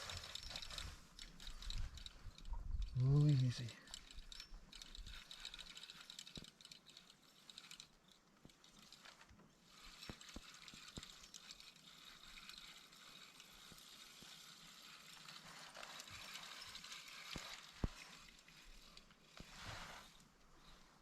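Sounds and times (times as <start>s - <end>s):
fishing reel ratchet clicking: 0.1s - 9.0s, 9.7s - 15.4s.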